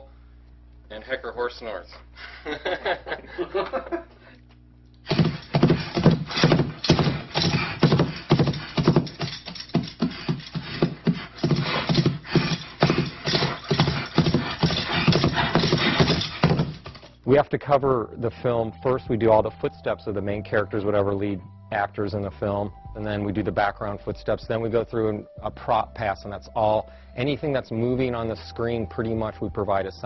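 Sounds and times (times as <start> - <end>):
galloping hoofbeats: 5.1 - 17.0
bridle tack jingling: 5.1 - 17.2
horse snorts: 10.0 - 16.9.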